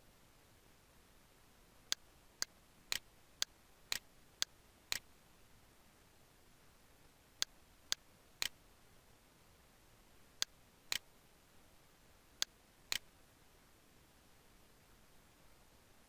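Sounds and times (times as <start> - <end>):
faint hiss: 0.0 - 16.0
sharp short clicks: 12.4 - 13.1.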